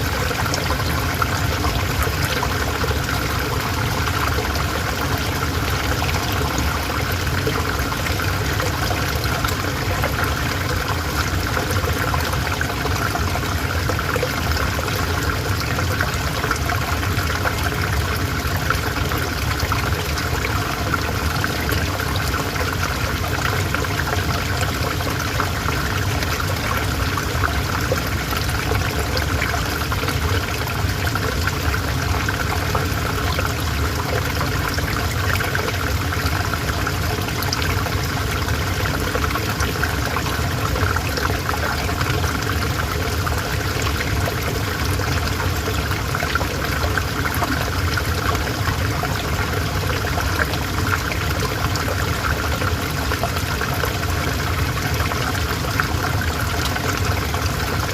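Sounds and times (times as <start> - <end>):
river water flowing over stones: 0.0 - 57.9.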